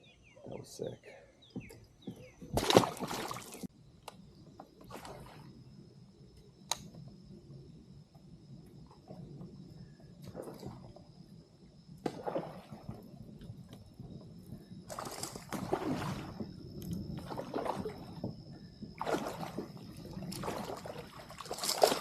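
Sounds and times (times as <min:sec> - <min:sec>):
water splashing against a kayak: 0:02.2 - 0:03.7, 0:04.6 - 0:05.7, 0:09.0 - 0:22.0.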